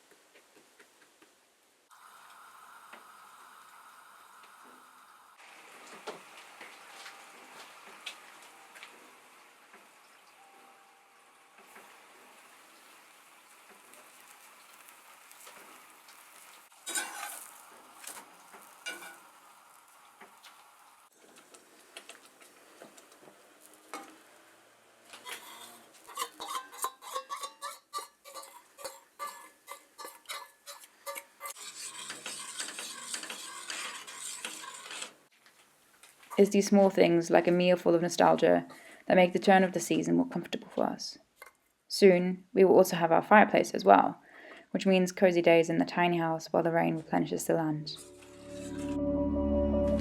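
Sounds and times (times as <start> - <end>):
food sizzling: 1.9 - 37.8
utensil stirring in a pot: 25.1 - 35.2.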